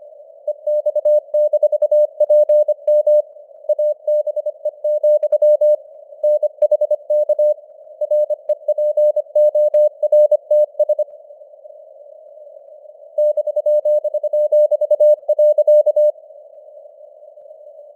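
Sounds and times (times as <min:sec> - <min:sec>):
morse code tone: 0:00.7 - 0:11.0.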